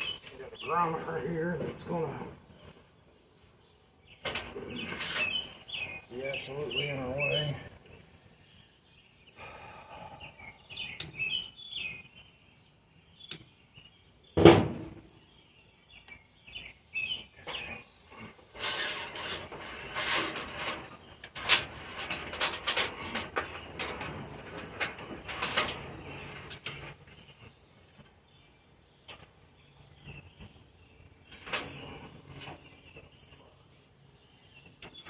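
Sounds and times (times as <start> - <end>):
small birds chirping: 0.0 - 35.0
loud metal clunk: 14.4 - 15.0
clicking and rattling of parts: 20.2 - 27.2.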